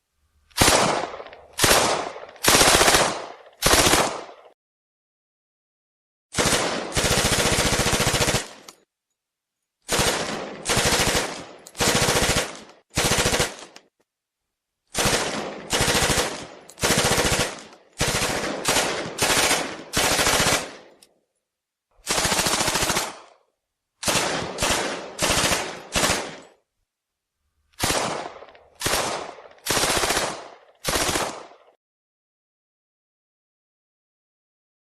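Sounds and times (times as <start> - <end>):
submachine gun firing bursts: 0.6 - 4.4, 6.3 - 8.7, 9.9 - 13.8, 14.9 - 21.0, 22.0 - 23.4, 24.0 - 26.5, 27.8 - 31.7.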